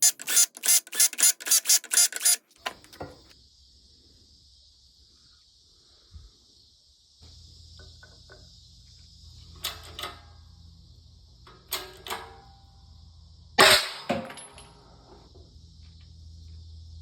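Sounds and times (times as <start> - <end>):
metal parts clinking together: 13.6 - 14.7.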